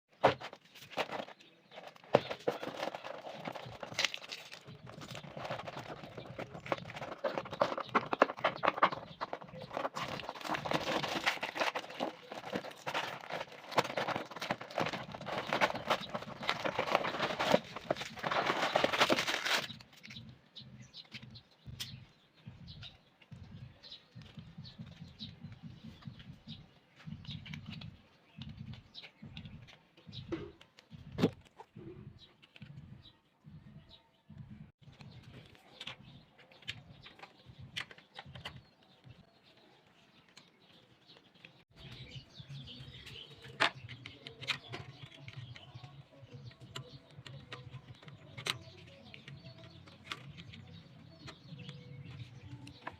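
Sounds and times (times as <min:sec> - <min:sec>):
plastic packaging crinkling: 0:00.8 - 0:20.1.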